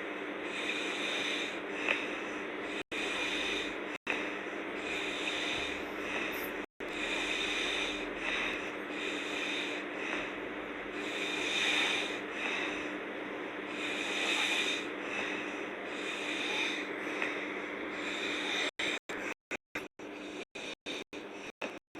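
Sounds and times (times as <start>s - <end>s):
woman snoring: 0.5s - 2.0s, 2.6s - 4.0s, 4.6s - 13.0s, 13.6s - 17.3s, 17.9s - 19.4s.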